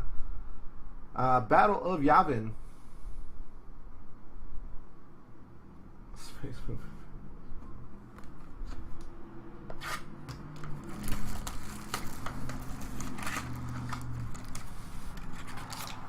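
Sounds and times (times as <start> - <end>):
trading cards sliding and clicking: 8.2 - 16.0.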